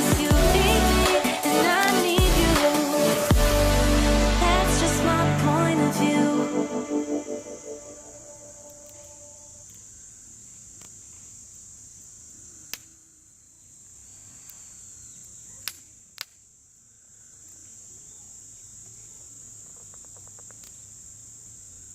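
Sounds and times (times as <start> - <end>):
insects trilling: 6.1 - 21.9.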